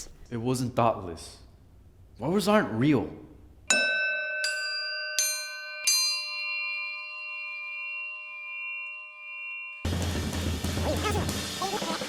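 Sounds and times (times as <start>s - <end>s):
bell-like chime notes: 3.7s - 11.0s.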